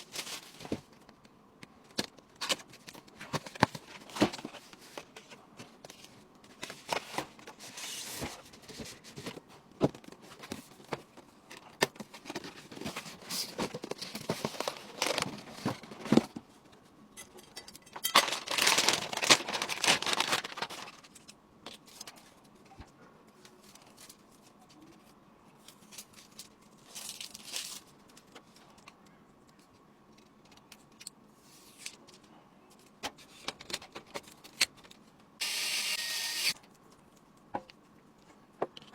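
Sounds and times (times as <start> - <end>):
plastic packaging crinkling: 13.7 - 15.6, 18.1 - 21.3, 25.7 - 28.4.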